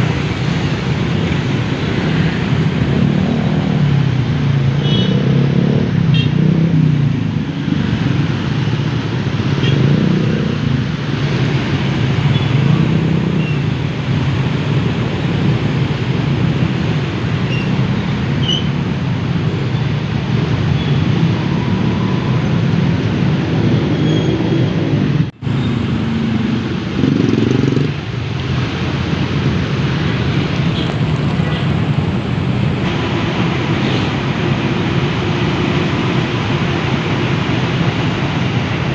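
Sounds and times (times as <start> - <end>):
car and motorcycle engines: 0.0 - 38.9.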